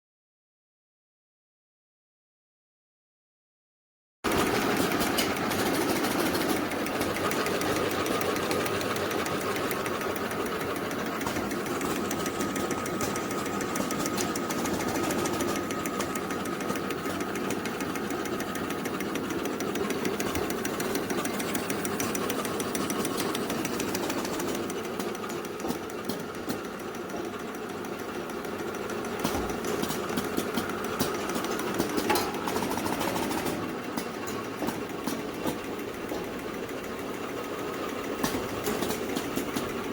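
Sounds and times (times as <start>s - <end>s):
packaging machine clattering: 4.3s - 36.8s, 37.5s - 39.9s
sharp clicks: 4.3s - 39.9s.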